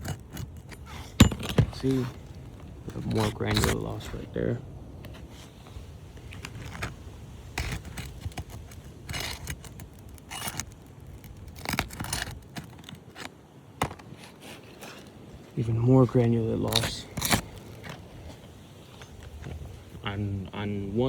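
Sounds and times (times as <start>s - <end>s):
metal tool scraping shingles: 6.2s - 13.3s, 16.1s - 19.7s.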